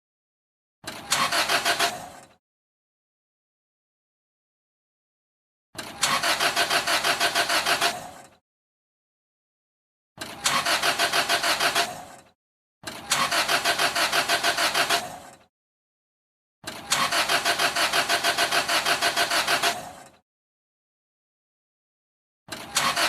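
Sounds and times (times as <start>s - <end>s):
car engine cranking without starting: 0.8s - 2.4s, 5.8s - 8.4s, 10.2s - 15.5s, 16.6s - 20.2s, 22.5s - 23.0s.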